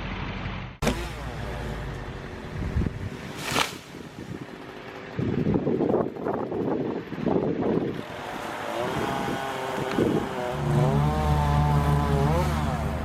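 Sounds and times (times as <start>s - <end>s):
engine running with low hum: 0.0s - 13.0s
wind gusting on microphone: 2.5s - 11.0s.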